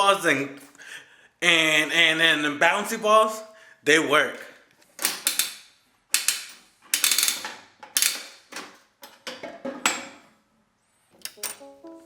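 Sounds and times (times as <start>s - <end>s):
vending machine crank ratcheting: 5.0s - 8.5s.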